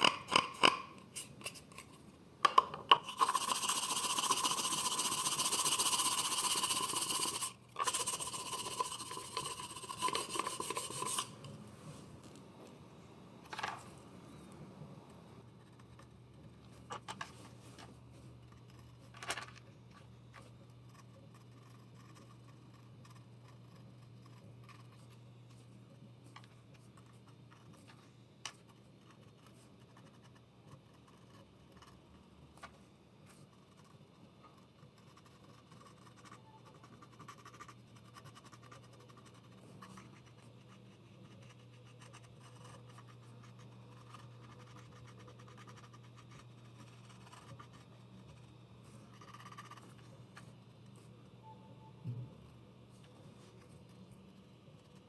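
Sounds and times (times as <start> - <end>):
steady low hum: 0.0 - 55.0
hand tool scraping tile: 3.1 - 11.4.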